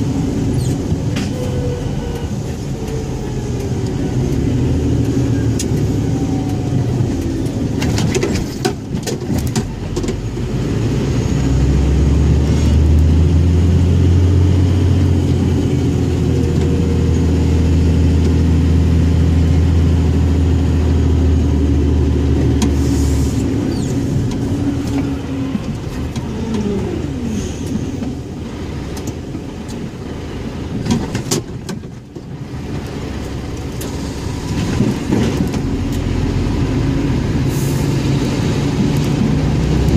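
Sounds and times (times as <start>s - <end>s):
truck diesel engine running: 0.0s - 30.8s.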